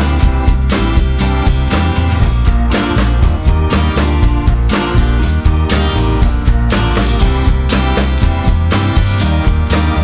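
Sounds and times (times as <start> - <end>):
guitar band music with drums: 0.0 - 10.0.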